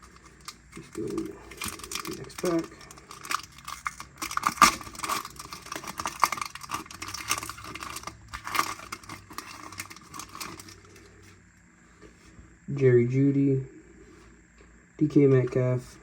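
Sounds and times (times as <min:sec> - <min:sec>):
plastic wrapper crinkling and tearing: 0:00.0 - 0:11.0.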